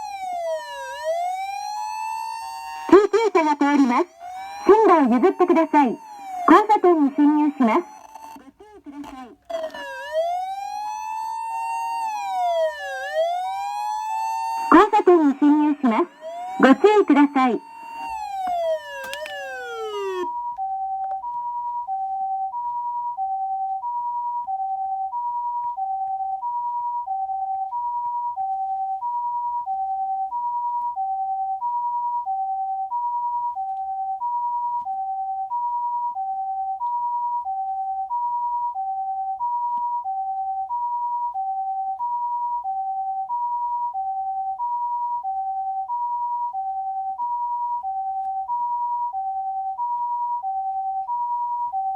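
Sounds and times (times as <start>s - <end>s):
falling siren sweep: 0.0s - 20.3s
two-tone hi-lo siren: 0.0s - 21.3s.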